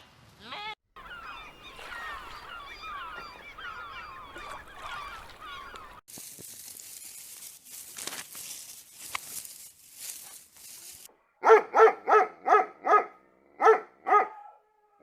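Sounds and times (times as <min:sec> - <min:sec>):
geese honking: 0:01.0 - 0:06.0.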